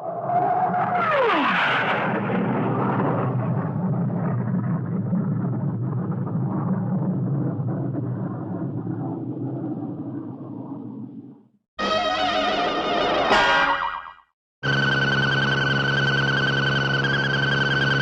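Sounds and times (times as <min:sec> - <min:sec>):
cartoon explosion: 0:11.8 - 0:14.2.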